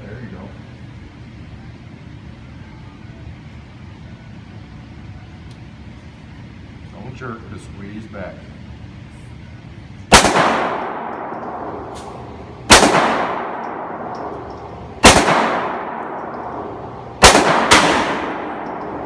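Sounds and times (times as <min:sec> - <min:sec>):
handgun shots with ringing decay: 0:10.1 - 0:19.0.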